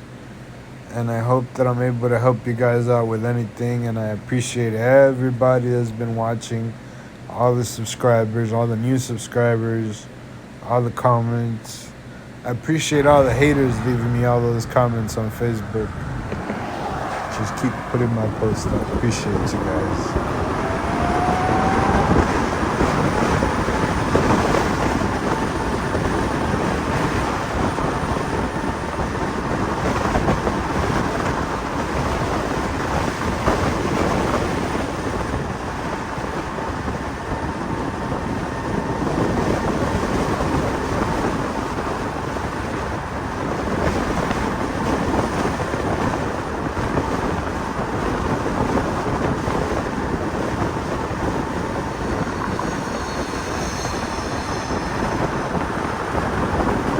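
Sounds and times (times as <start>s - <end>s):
wind buffeting microphone: 12.2s - 56.9s
electric motor whine: 13.2s - 28.6s, 49.0s - 56.9s.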